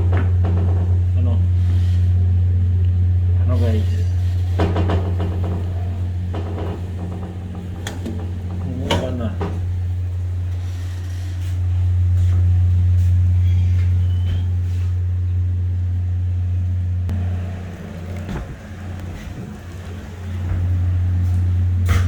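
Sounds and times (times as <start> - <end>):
car engine idling: 2.4 - 10.7, 14.7 - 22.0.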